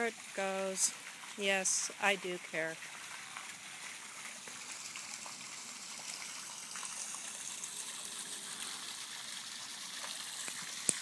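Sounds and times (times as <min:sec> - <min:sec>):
water gushing from a pipe: 0:00.0 - 0:11.0
water splashing onto flooded patio: 0:00.0 - 0:11.0.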